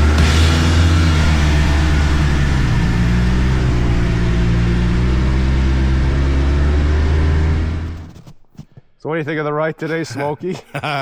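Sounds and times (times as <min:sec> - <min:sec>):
snowmobile engine droning: 0:00.0 - 0:08.1.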